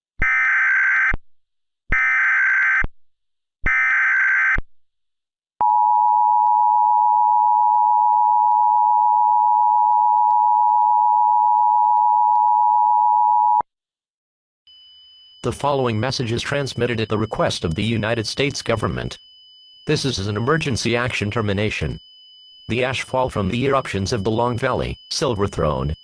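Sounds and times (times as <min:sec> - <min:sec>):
two-tone attention signal: 0:14.7 - 0:19.2
buzzing data tone bursts: 0:14.7 - 0:26.0.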